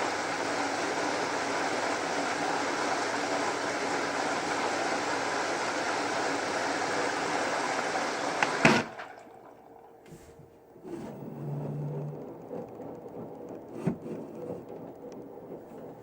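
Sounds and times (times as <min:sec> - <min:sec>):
water rushing into washing machine: 0:00.0 - 0:12.7.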